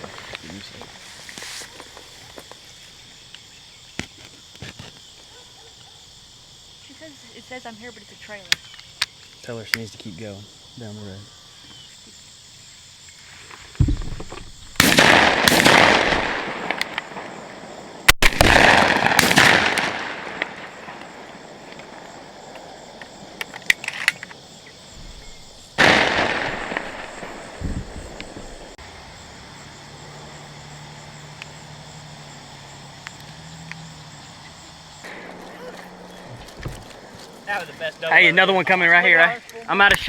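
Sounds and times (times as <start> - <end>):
shotgun blasts: 13.8 - 17.4, 18.1 - 22.0, 25.0 - 28.8
distant gunshots: 13.8 - 22.3, 25.0 - 28.8.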